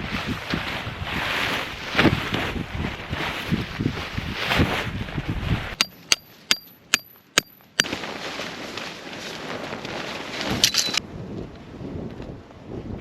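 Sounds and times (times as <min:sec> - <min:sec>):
strong wind buffeting microphone: 0:00.0 - 0:05.8, 0:10.4 - 0:13.0.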